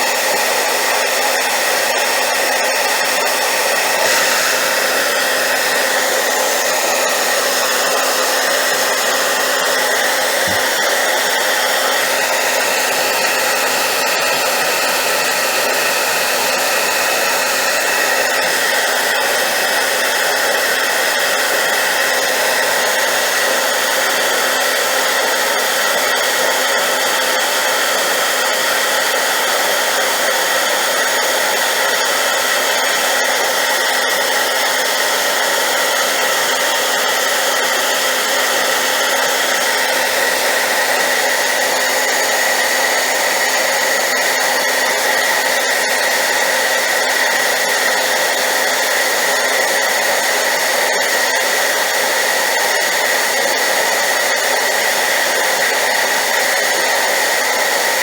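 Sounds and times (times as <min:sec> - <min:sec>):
hairdryer blowing: 0:00.0 - 0:58.0.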